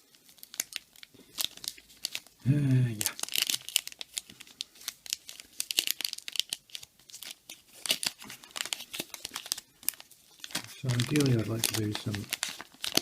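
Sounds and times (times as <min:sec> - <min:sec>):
wrappers crinkling and tearing: 0:00.0 - 0:13.0
cards being handled: 0:02.9 - 0:13.0.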